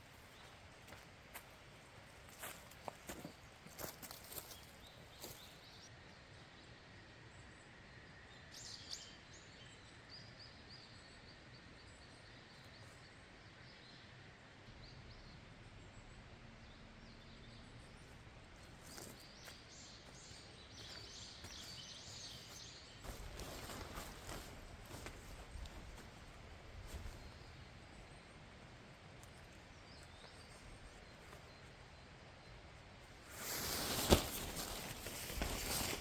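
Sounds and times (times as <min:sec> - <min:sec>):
background hiss: 0:18.7 - 0:36.0.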